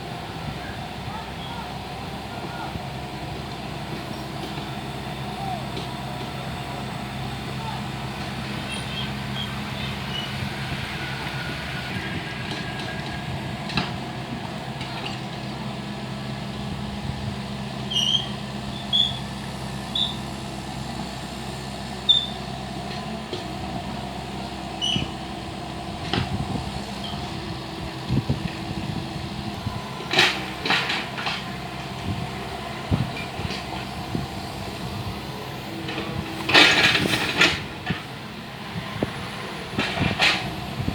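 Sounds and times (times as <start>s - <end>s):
excavator diesel engine running: 0.0s - 40.9s
short high squeaks: 17.9s - 19.3s, 19.9s - 20.2s, 22.1s - 22.4s, 24.8s - 25.1s.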